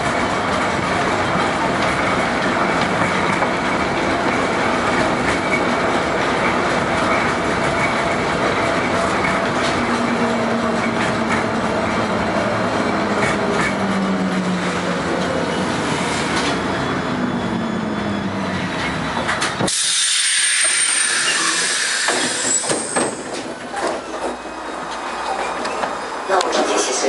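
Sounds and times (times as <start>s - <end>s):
tram rumbling on rails: 0.0s - 27.0s
loud hiss of air: 19.7s - 22.8s.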